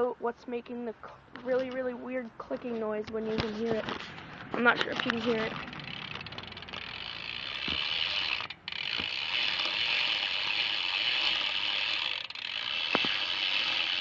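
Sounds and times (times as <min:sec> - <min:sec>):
bicycle hub ratchet clicking: 0:04.6 - 0:14.0.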